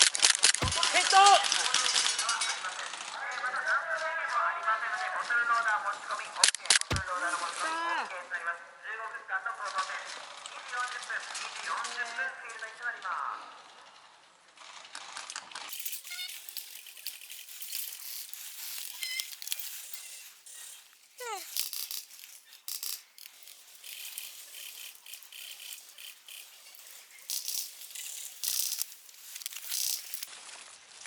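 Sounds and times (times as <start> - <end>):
brush and dry leaves rustling: 15.7 - 30.8.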